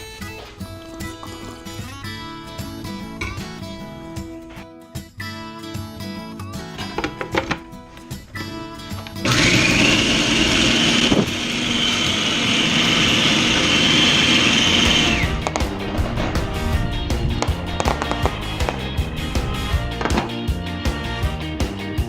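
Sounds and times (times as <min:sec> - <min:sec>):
kitchen appliance motor whining: 0:09.1 - 0:15.5.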